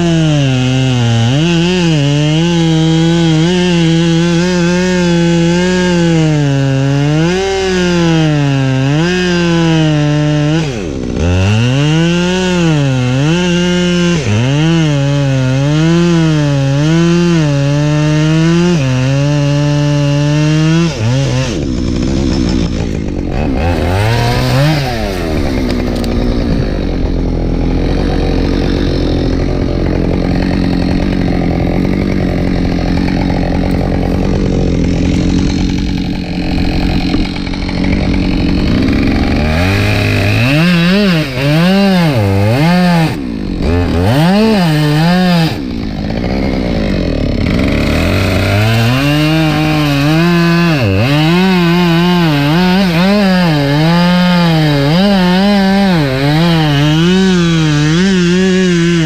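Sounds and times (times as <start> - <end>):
chainsaw cutting wood: 0.0 - 59.0.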